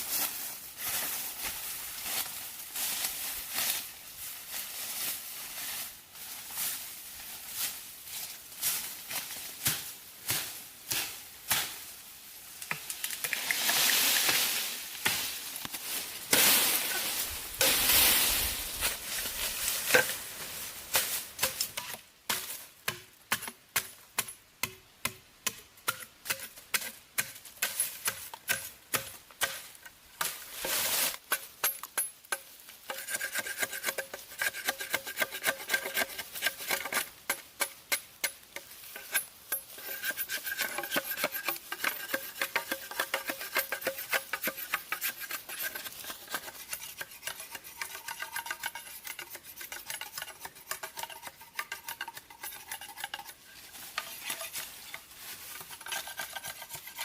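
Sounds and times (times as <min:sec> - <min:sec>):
scraping and rasping strokes: 0:12.7 - 0:22.5, 0:26.3 - 0:57.0.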